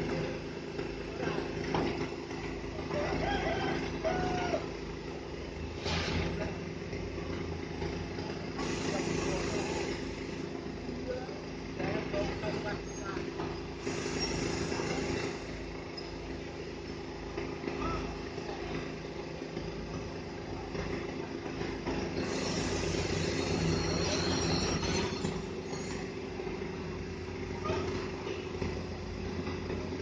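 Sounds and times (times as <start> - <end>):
crane diesel engine running: 0.0 - 30.0
faint high-pitched metallic squeals: 22.2 - 26.3.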